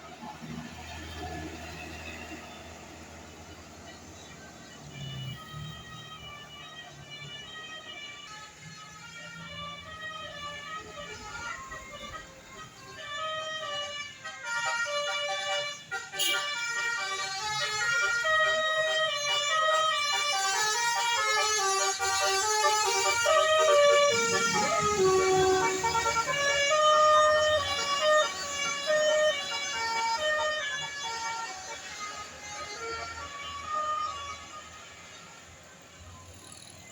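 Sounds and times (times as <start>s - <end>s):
bus engine rumbling: 0.0s - 5.7s, 6.3s - 36.9s
multi-note bus air horn melody: 7.9s - 36.3s.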